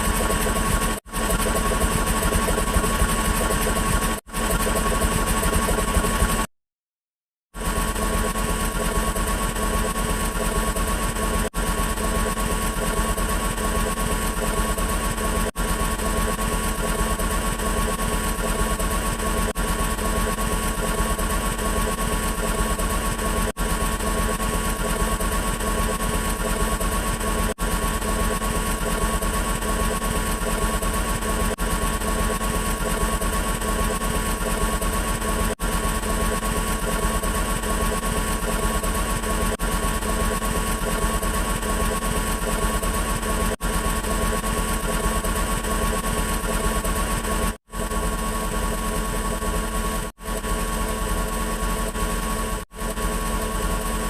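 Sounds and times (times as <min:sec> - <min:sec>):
mechanical buzz with fixed tones: 0:07.6 - 0:54.0.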